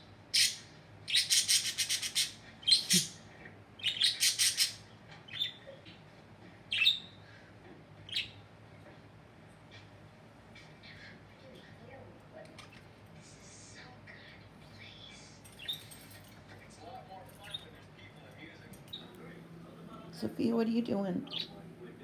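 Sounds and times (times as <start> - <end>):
budgerigar chirping: 0.3 - 3.1, 3.8 - 5.6, 6.7 - 7.1, 8.1 - 8.4, 21.2 - 21.5.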